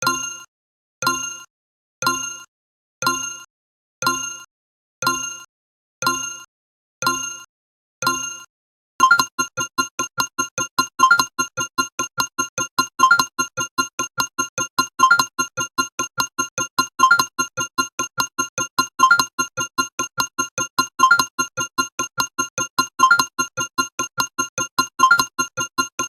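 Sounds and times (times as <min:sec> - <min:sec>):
bouncy electronic tune: 0:09.0 - 0:26.0.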